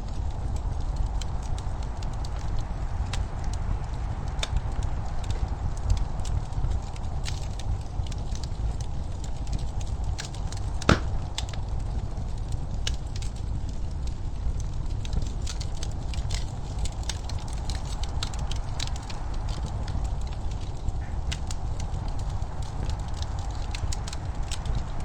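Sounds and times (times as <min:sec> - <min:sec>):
wood fire crackling: 0:00.0 - 0:25.0
loud fire pop: 0:10.9 - 0:11.4.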